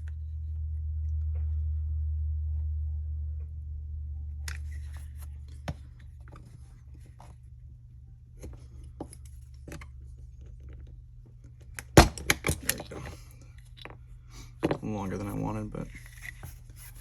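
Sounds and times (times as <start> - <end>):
low hum: 0.0 - 17.0
small gun parts clicking and scraping: 8.4 - 17.0.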